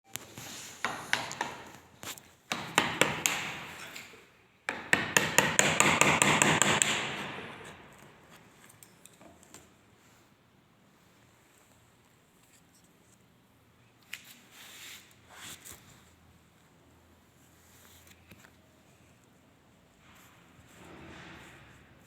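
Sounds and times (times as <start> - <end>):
sharp knocks and taps: 0.8 - 1.9, 2.5 - 3.8, 4.7 - 7.4.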